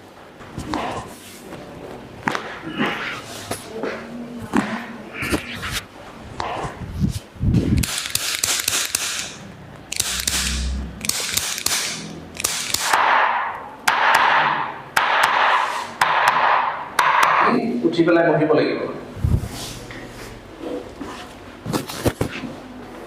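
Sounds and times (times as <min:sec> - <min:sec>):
swishing bursts: 0:09.9 - 0:12.8.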